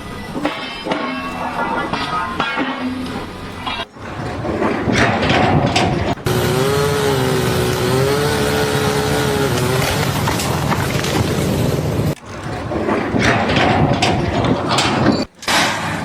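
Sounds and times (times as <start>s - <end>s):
rumbling machinery: 0.0s - 16.0s
steady machine whine: 0.0s - 16.0s.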